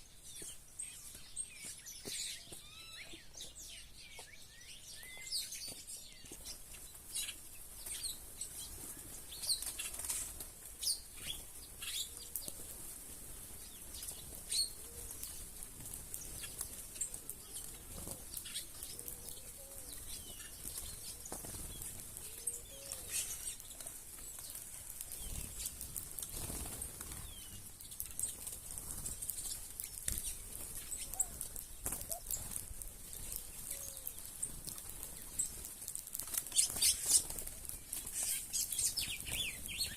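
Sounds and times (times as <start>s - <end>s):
bird wings flapping: 7.7s - 39.9s
low bird calls: 16.2s - 24.4s, 29.0s - 35.6s.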